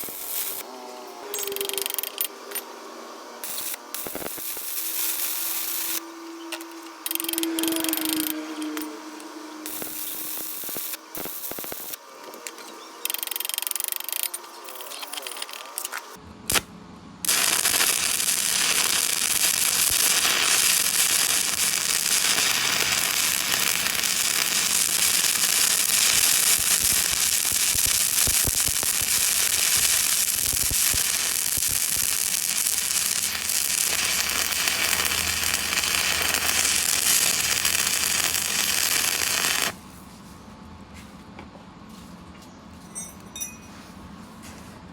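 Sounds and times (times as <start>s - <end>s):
welding arc crackling: 0.0s - 0.6s, 3.4s - 12.0s, 13.1s - 39.8s.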